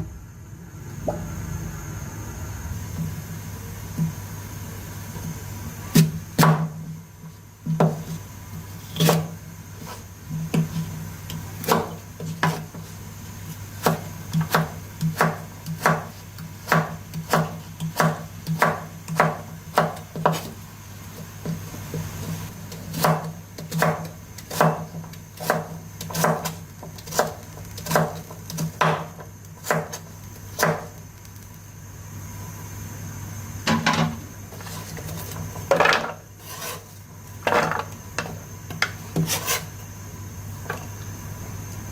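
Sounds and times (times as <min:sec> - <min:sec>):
knife chopping on wooden board: 0:05.9 - 0:06.8, 0:07.7 - 0:08.1, 0:08.9 - 0:09.3, 0:11.6 - 0:12.7, 0:13.8 - 0:20.5, 0:22.9 - 0:30.0, 0:30.6 - 0:30.9.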